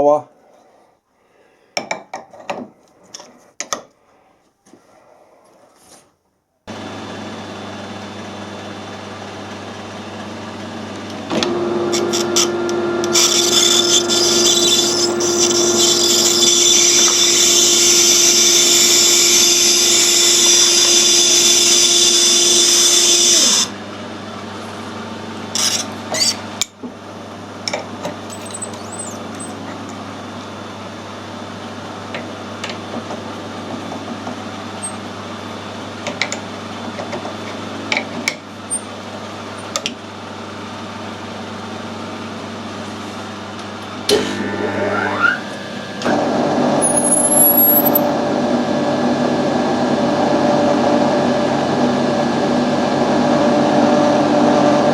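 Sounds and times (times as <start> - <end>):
metal lathe running: 11.0 - 23.8, 28.3 - 29.6, 44.1 - 54.0.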